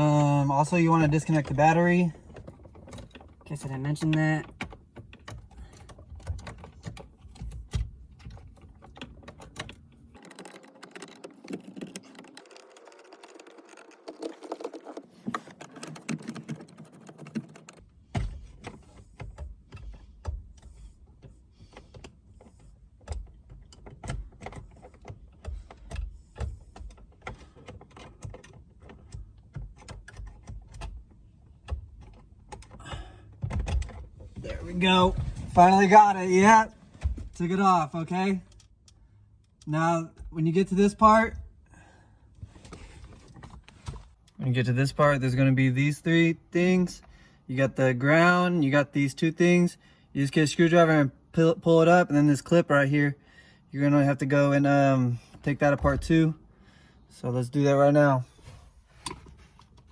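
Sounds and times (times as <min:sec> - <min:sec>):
screwdriver clicking on metal and plastic: 0:04.0 - 0:17.8.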